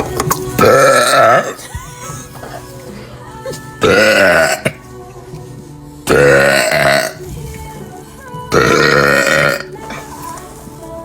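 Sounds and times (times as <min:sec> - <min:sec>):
girl burping loudly: 0:00.6 - 0:02.6, 0:03.5 - 0:04.8, 0:06.1 - 0:07.2, 0:08.5 - 0:10.0.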